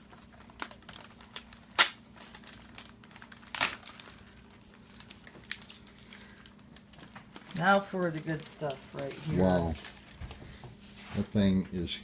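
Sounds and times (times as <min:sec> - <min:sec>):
packaging crinkling and rustling: 0:00.0 - 0:10.5
sharp plastic snaps: 0:01.4 - 0:02.0.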